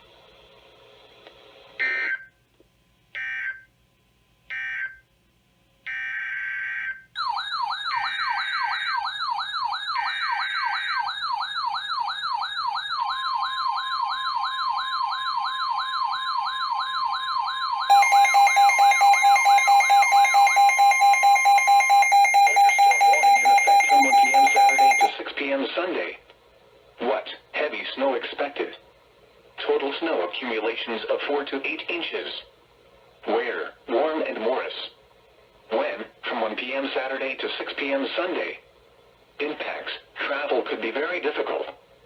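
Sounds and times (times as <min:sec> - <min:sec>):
pulsing two-tone attention alarm: 0:05.9 - 0:25.1
rapidly warbling siren: 0:06.6 - 0:25.1
steady alert tone: 0:17.9 - 0:25.1.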